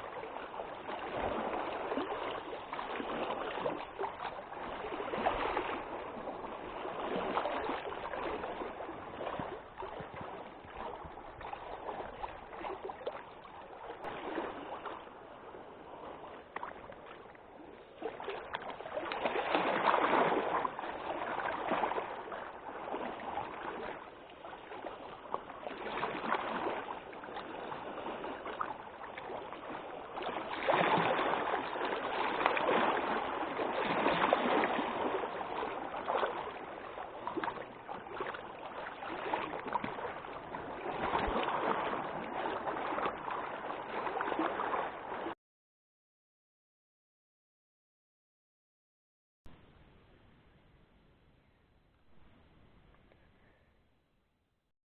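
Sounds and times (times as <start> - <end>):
wind gusts: 0.0 - 24.0
choppy lake water: 0.0 - 45.4, 49.5 - 54.1.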